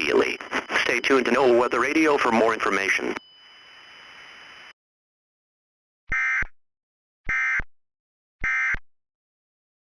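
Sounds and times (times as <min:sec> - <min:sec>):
digital data tone bursts: 0:00.0 - 0:04.3.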